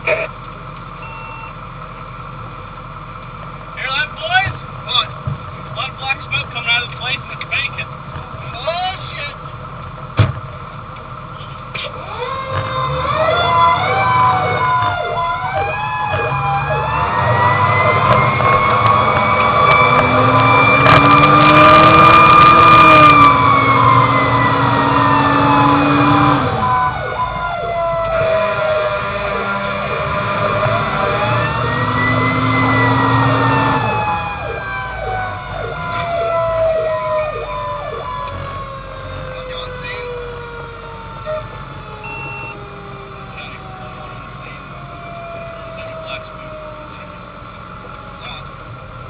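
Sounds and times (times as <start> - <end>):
truck engine rumbling: 0.0 - 49.0
fire engine siren winding up: 11.8 - 48.5.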